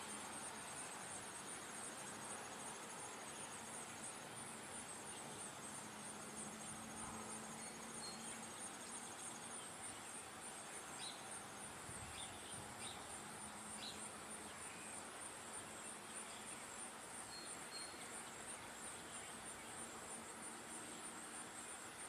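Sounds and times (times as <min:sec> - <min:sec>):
faint bird chirps: 0:17.3 - 0:18.2.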